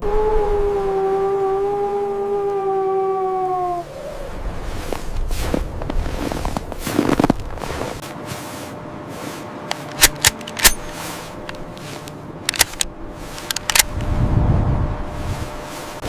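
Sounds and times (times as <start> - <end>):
faint steady hum: 0.0 - 16.0
sharp cracks and pops: 9.7 - 10.8, 12.5 - 14.0.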